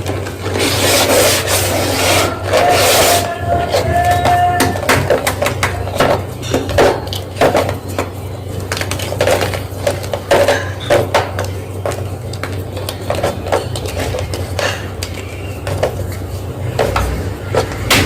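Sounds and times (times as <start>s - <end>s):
chalk crunching and crackling: 0.0s - 5.9s
steady low hum: 0.0s - 18.0s.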